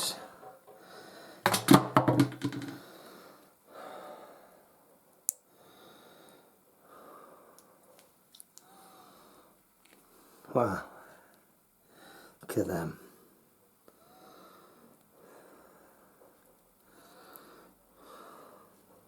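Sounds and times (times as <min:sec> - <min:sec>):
faint breathing: 0:00.3 - 0:01.5, 0:02.8 - 0:04.9, 0:05.5 - 0:08.0, 0:08.6 - 0:12.4, 0:13.0 - 0:19.0
plastic mold creaking and crackling: 0:01.5 - 0:02.8.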